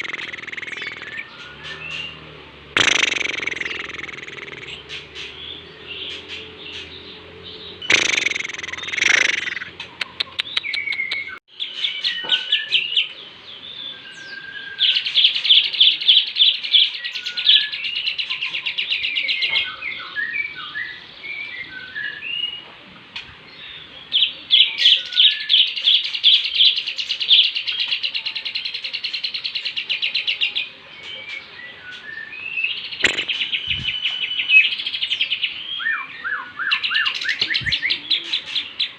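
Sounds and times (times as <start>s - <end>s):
lovebird rapid high chirps: 0.0s - 2.2s, 2.8s - 5.4s, 7.8s - 11.4s, 32.8s - 34.8s
loud harsh bird call: 0.0s - 21.1s, 31.3s - 38.9s
lovebird short chirps: 2.8s - 4.7s, 7.9s - 11.3s, 33.0s - 34.0s.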